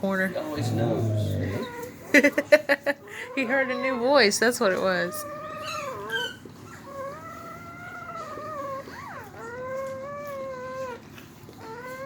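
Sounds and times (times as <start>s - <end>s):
puppy crying: 0.5s - 1.9s, 5.0s - 12.0s
puppy squeak: 5.2s - 11.0s.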